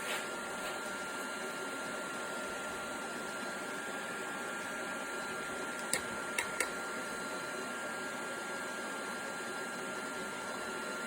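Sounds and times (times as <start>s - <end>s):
welder fan noise with whine: 0.0s - 11.0s.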